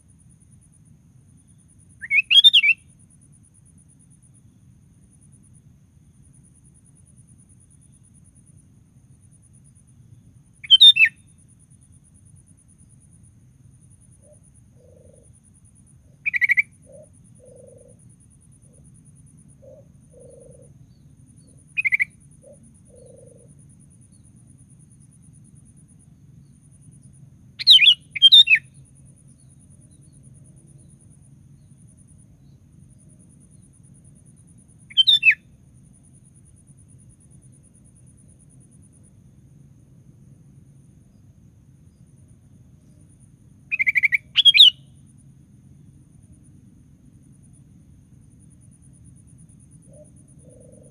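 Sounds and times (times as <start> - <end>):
faint low hum: 0.0 - 50.9
bulbul bubbly calls: 21.8 - 23.5, 34.9 - 35.4, 43.7 - 44.8.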